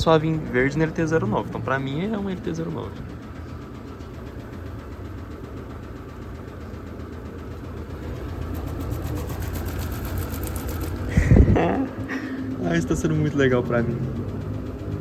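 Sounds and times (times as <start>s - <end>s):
washing machine spin hum: 0.0s - 15.0s
fast even ticking: 6.5s - 15.0s.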